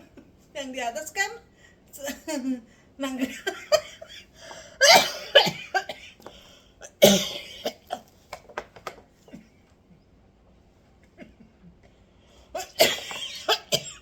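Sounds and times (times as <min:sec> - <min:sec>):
woman coughing: 0:02.1 - 0:04.2, 0:04.8 - 0:06.2, 0:06.8 - 0:08.0, 0:12.6 - 0:14.0.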